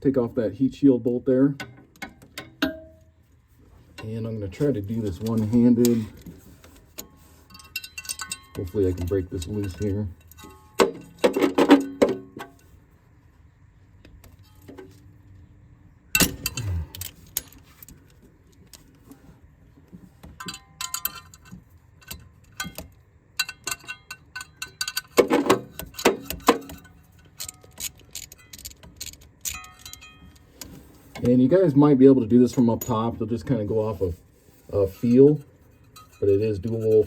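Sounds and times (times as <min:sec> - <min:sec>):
metal clinks and knocks: 0:01.6 - 0:03.3, 0:03.9 - 0:12.8, 0:14.2 - 0:15.1, 0:16.1 - 0:19.0, 0:19.9 - 0:31.3, 0:34.6 - 0:37.0.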